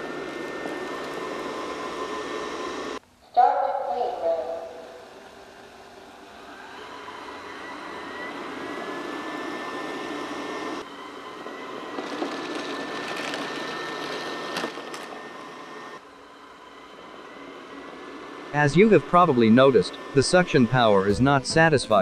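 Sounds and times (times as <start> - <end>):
robot vacuum whirring and whining: 0.0 - 3.0, 4.8 - 22.0.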